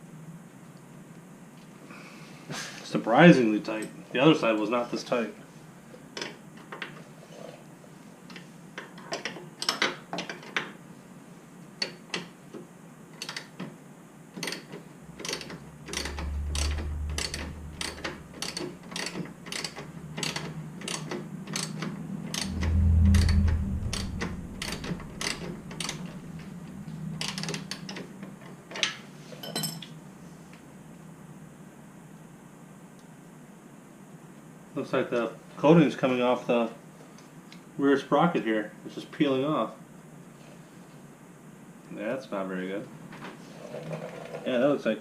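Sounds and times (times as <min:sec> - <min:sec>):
low hum: 0:15.0 - 0:19.2, 0:21.4 - 0:28.6.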